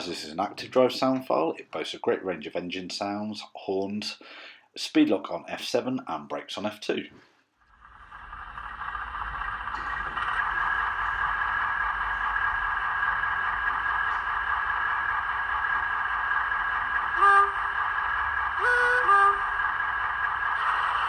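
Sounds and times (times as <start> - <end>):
diesel engine sound through small speaker: 0.0 - 1.3, 7.6 - 21.0.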